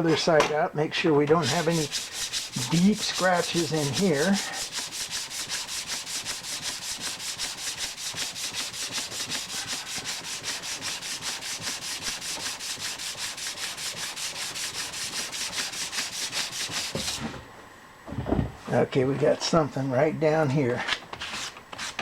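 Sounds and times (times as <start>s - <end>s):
sandpaper rubbing on plastic: 1.3s - 17.3s, 21.2s - 22.0s.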